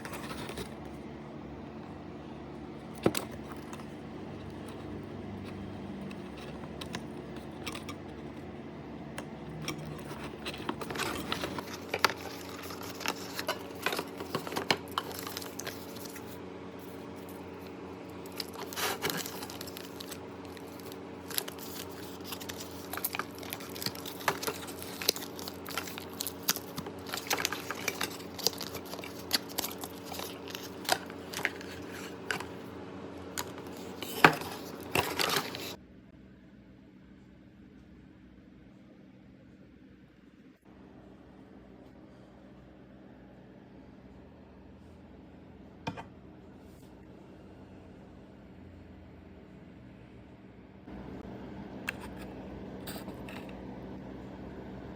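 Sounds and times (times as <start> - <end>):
steady low hum: 0.0 - 54.9
packaging rustling and crinkling: 9.8 - 32.7, 33.3 - 35.8.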